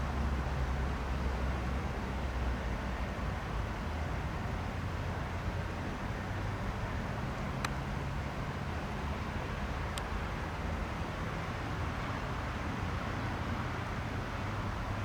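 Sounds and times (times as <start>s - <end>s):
faint clicks: 9.9s - 10.1s.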